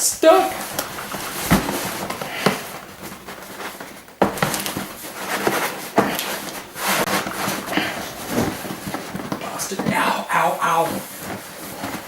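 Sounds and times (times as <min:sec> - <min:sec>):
scraping rub: 0:00.3 - 0:12.0.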